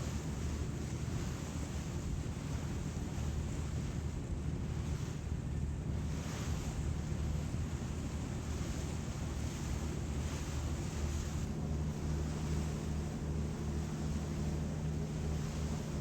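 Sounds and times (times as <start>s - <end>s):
ferry engine drone: 10.2s - 16.0s.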